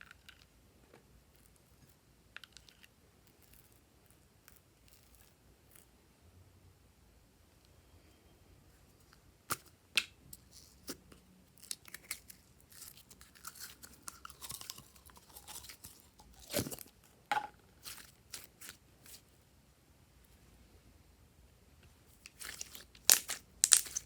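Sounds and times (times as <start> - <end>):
slime crackling and snapping: 22.3 - 24.0.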